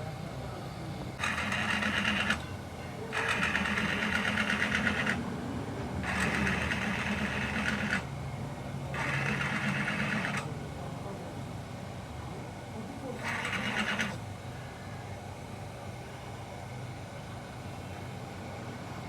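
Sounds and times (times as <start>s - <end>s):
small machine rapid clatter: 1.2s - 5.3s, 6.0s - 8.1s, 8.9s - 10.6s, 13.0s - 14.2s.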